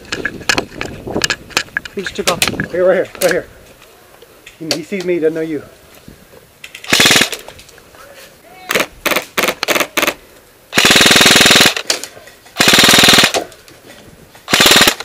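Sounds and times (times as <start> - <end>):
airsoft rifle firing bursts: 6.9 - 7.4, 8.7 - 11.9, 12.6 - 13.4, 14.5 - 15.0.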